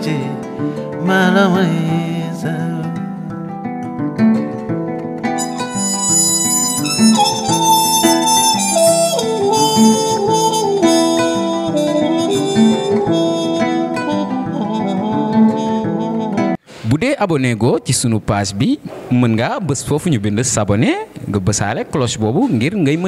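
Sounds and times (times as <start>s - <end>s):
repeating guitar pattern: 0.0s - 16.6s
sliding lead melody: 0.0s - 16.6s.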